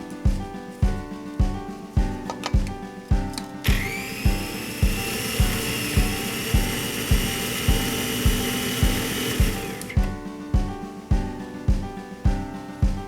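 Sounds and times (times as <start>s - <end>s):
background music with steady beat: 0.0s - 13.0s
electric blender motor whining: 3.6s - 10.0s.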